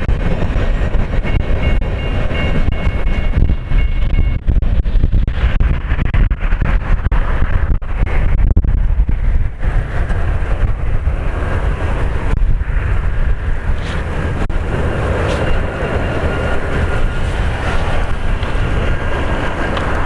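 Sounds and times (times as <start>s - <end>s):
diesel locomotives rumbling: 0.0s - 20.0s
wind buffeting microphone: 0.0s - 20.0s
faint steady whines: 1.0s - 20.0s.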